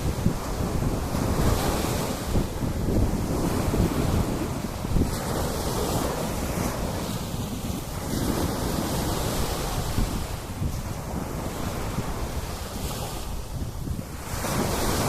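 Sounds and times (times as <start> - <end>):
waves washing onto beach: 0.0 - 15.0
wind buffeting microphone: 0.0 - 15.0.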